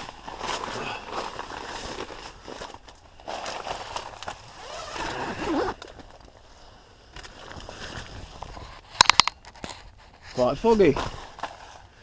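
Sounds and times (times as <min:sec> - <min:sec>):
tent fabric rustling: 0:00.0 - 0:08.9, 0:09.7 - 0:12.0
tent zip being undone: 0:03.2 - 0:06.2.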